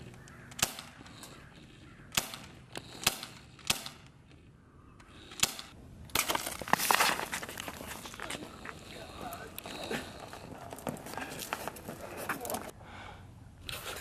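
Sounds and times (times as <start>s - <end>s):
air pistol shots: 0.5s - 1.2s, 2.1s - 4.1s, 5.3s - 5.8s.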